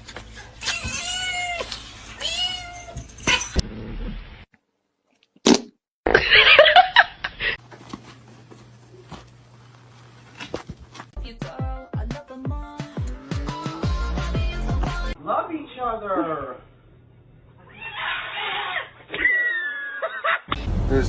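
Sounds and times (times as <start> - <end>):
cat meowing: 0.6 - 3.0.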